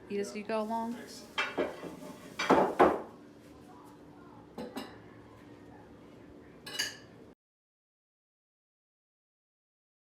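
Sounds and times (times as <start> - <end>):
dishes and cutlery clattering: 1.3 - 3.1, 4.6 - 5.0, 6.6 - 7.2.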